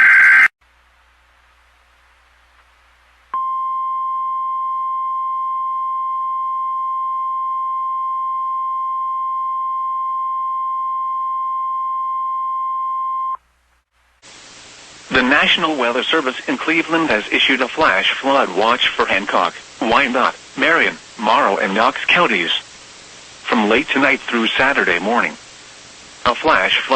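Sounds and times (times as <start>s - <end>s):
faint radio hiss: 0.6s - 4.0s, 13.5s - 26.9s.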